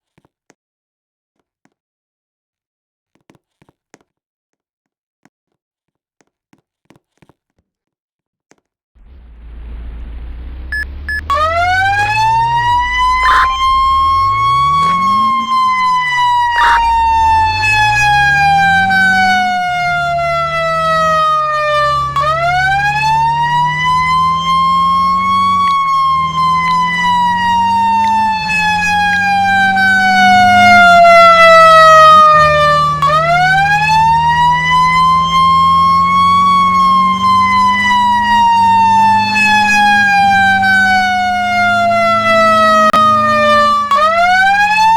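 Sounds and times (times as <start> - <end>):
fire engine siren wailing: 9.0 - 44.9
low truck engine: 9.0 - 44.9.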